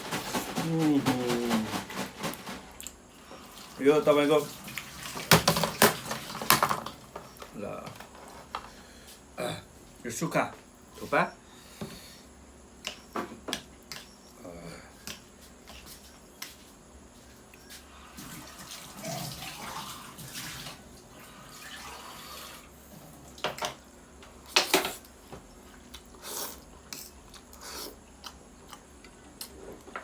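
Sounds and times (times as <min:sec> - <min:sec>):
person chewing and slurping noodles: 0:25.7 - 0:29.9.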